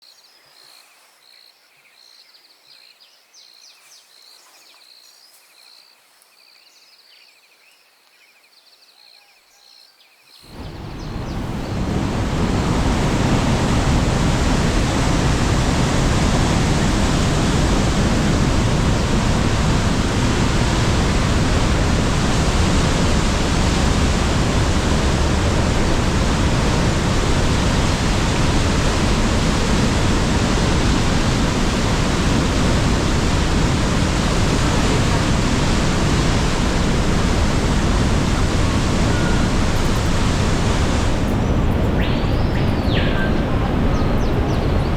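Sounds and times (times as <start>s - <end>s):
waterfall rushing: 10.5s - 44.9s.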